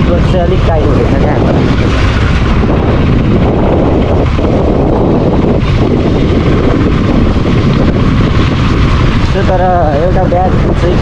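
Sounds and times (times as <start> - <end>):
motorcycle engine: 0.0 - 11.0
wind rush over microphone: 0.0 - 11.0.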